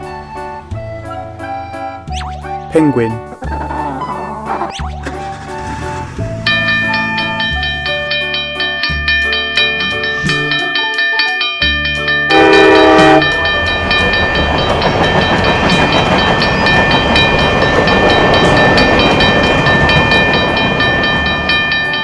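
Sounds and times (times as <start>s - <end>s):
light background music: 0.0s - 22.0s
train rumbling on rails: 3.3s - 22.0s
train whistle blast: 12.3s - 13.3s.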